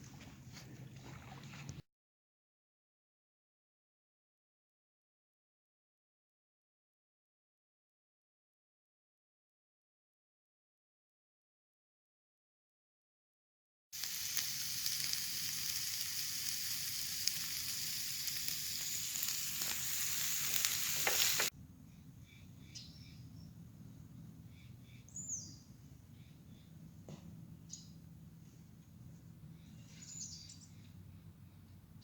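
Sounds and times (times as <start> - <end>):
loud steady hiss: 14.0 - 21.5
bird chirps: 20.1 - 23.6, 29.6 - 30.9.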